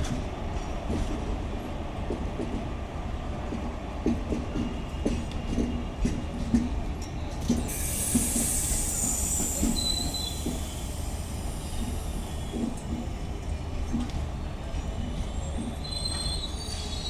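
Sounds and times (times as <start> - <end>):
train rumble: 0.0 - 17.0
wheels hissing and screeching: 7.7 - 12.8
thin wheel squeal: 8.5 - 11.0.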